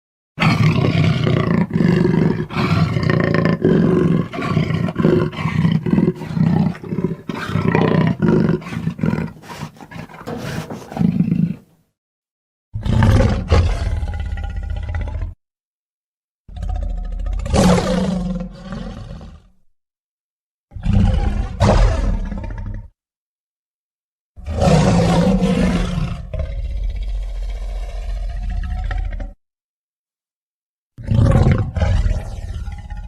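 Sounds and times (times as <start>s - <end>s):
dinosaur roar: 0.4s - 11.7s, 12.8s - 15.4s, 16.5s - 19.5s, 20.8s - 22.9s, 24.4s - 29.4s, 31.0s - 33.0s.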